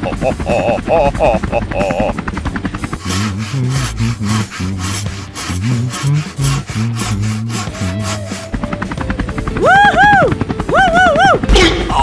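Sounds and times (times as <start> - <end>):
scratchy rasping beat: 0.0 - 8.8.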